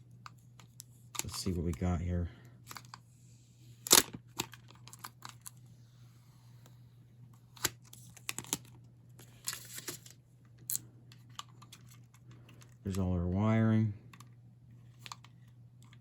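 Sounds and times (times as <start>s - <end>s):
packaging clicks and crinkling: 0.2s - 1.9s, 3.8s - 5.6s, 7.6s - 13.1s.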